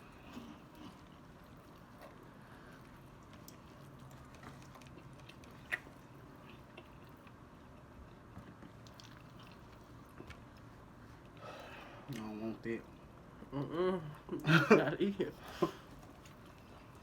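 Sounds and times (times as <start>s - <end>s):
people chewing: 0.0s - 17.0s.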